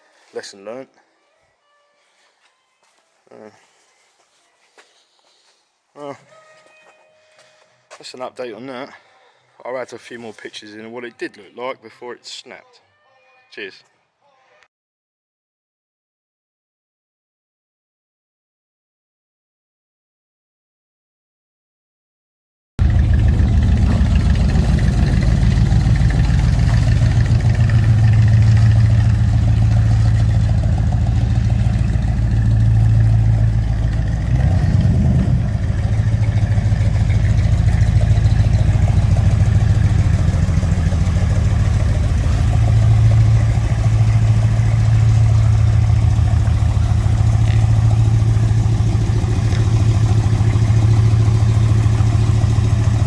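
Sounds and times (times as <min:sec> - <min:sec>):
car engine idling: 0:22.8 - 0:53.0.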